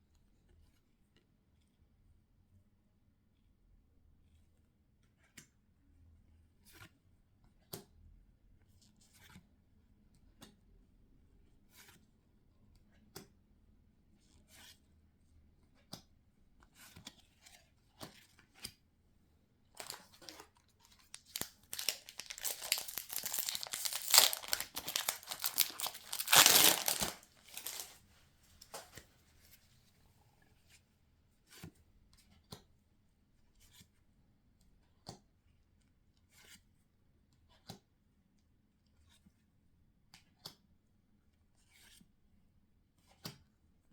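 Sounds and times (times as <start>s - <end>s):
foil wrapper crinkling and tearing: 19.8s - 28.0s.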